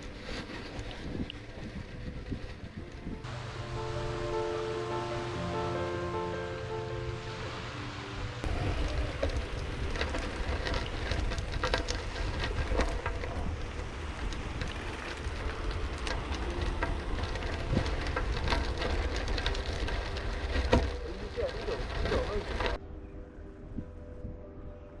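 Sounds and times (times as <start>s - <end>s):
seawater splashing and lapping: 0.0s - 22.8s
wind rumbling on microphone: 0.0s - 25.0s.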